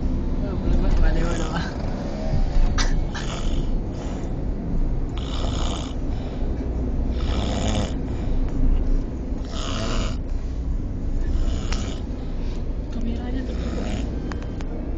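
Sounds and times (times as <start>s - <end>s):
steady low rumble: 0.0s - 14.9s
person snoring heavily: 3.1s - 4.3s, 5.1s - 6.2s, 7.1s - 8.1s, 9.4s - 10.3s, 11.2s - 12.1s, 13.4s - 14.2s.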